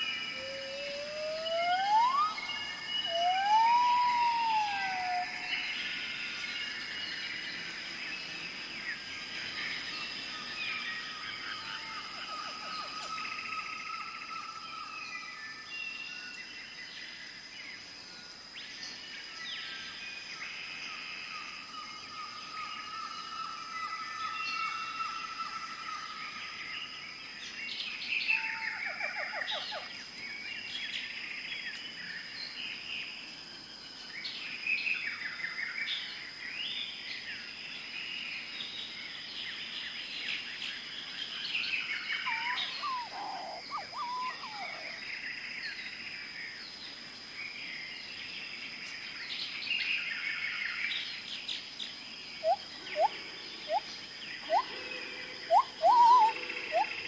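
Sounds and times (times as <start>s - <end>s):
birds chirping and trilling: 39.1s - 47.0s, 47.6s - 57.0s.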